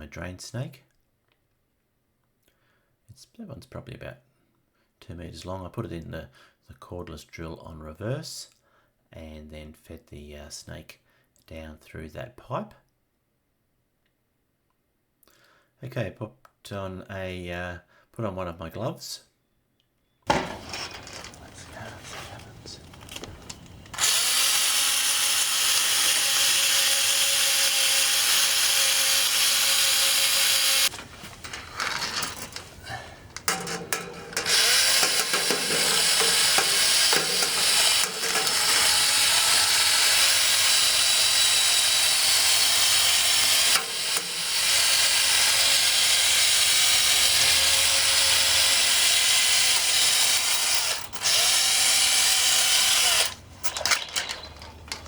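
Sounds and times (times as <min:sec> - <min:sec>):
cordless drill spinning drain snake: 0:20.4 - 0:21.6, 0:22.9 - 0:55.0.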